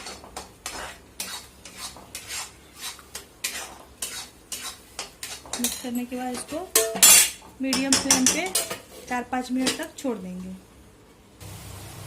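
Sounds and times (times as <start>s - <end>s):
spoon scraping paste in a pan: 0.0s - 7.2s.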